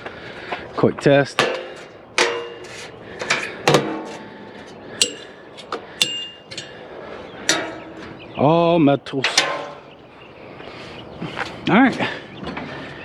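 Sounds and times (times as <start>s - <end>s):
metal clanks and taps: 1.4s - 4.3s, 5.0s - 6.8s, 7.5s - 8.1s.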